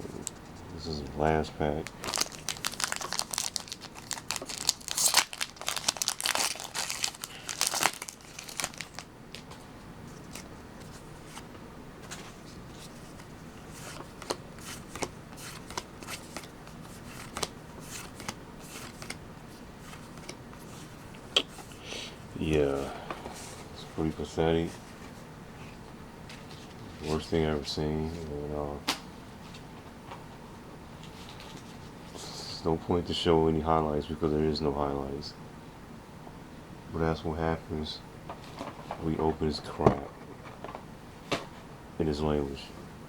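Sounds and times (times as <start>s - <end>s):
foil wrapper tearing and crinkling: 1.9s - 9.5s
cards clicking while handled: 17.1s - 19.2s.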